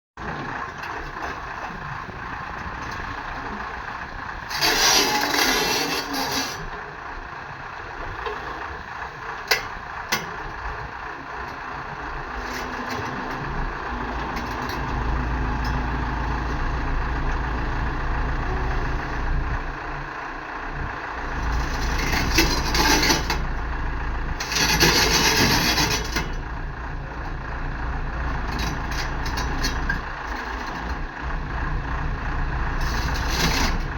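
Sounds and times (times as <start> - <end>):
excavator engine running: 0.2 - 33.9.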